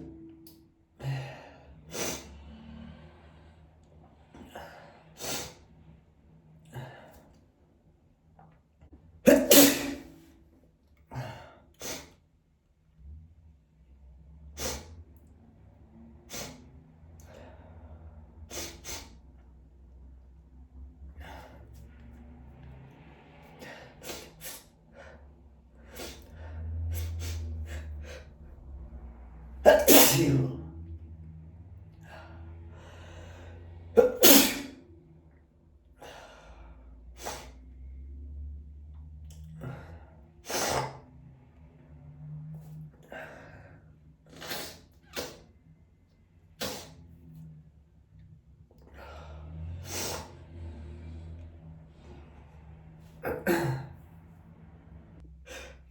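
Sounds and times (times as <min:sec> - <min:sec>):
person breathing: 0:00.0 - 0:07.4, 0:30.8 - 0:34.0, 0:35.8 - 0:38.1, 0:43.0 - 0:45.8, 0:48.8 - 0:53.2, 0:54.6 - 0:55.9
steady low hum: 0:00.0 - 0:55.9
person sneezing: 0:09.3 - 0:10.2, 0:11.1 - 0:12.2, 0:18.5 - 0:19.2, 0:24.0 - 0:24.6, 0:29.7 - 0:30.7, 0:34.0 - 0:34.8, 0:44.3 - 0:45.5, 0:46.6 - 0:47.0, 0:53.2 - 0:54.0.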